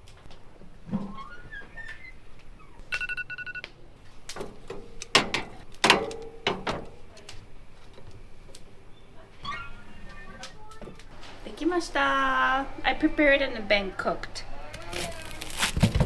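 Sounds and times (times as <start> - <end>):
electronic beeps: 2.9 - 3.6
loud sharp knocks and clacks: 4.3 - 7.1.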